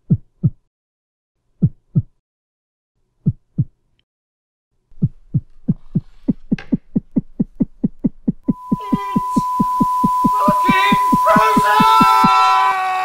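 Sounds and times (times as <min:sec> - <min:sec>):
heartbeat thumps: 0:00.0 - 0:00.6, 0:01.6 - 0:02.2, 0:03.2 - 0:03.8, 0:05.0 - 0:12.4
low hum: 0:07.0 - 0:12.7.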